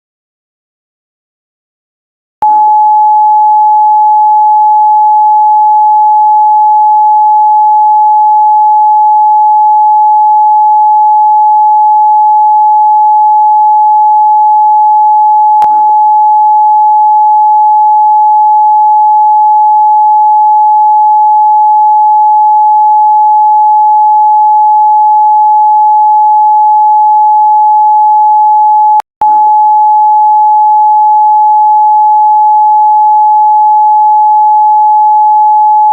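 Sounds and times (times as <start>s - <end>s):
click: 15.6s - 15.8s.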